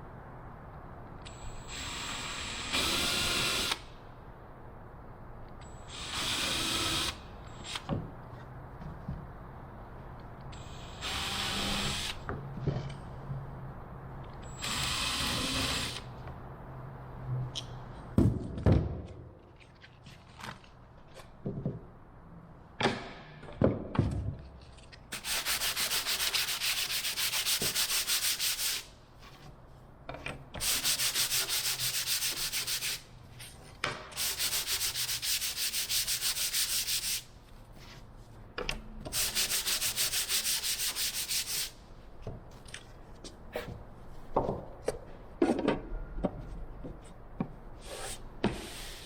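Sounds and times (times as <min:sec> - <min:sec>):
knocks and handling of parts: 0:07.8 - 0:09.4, 0:12.3 - 0:13.1, 0:17.5 - 0:22.0, 0:22.8 - 0:25.1, 0:29.4 - 0:30.6, 0:33.6 - 0:34.2, 0:38.5 - 0:39.2, 0:42.2 - 0:47.7.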